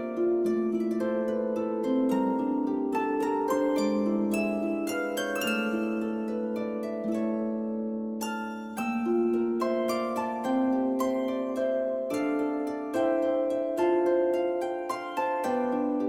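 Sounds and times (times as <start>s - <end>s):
harp-like music: 0.0s - 16.0s.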